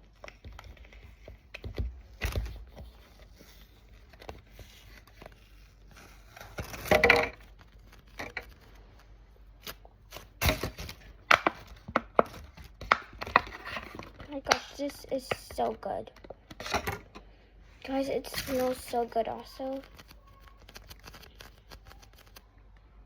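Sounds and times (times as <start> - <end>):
packaging rustling: 0.0 - 14.4, 18.0 - 22.5
plastic packaging tearing: 4.8 - 8.9, 9.6 - 11.2, 18.2 - 22.5.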